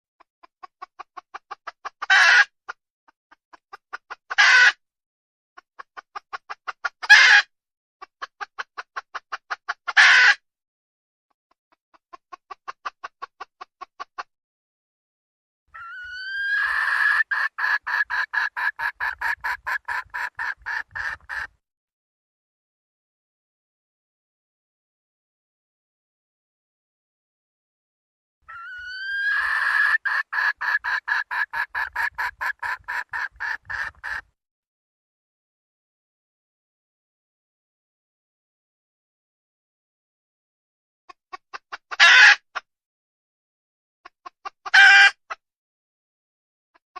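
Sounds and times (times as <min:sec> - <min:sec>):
hen cackling and clucking: 0:00.4 - 0:02.7, 0:03.5 - 0:04.8, 0:05.7 - 0:10.4, 0:15.7 - 0:21.6, 0:28.5 - 0:34.3, 0:41.3 - 0:42.6, 0:44.2 - 0:45.4
hen squawking: 0:15.8 - 0:21.5, 0:28.5 - 0:34.2.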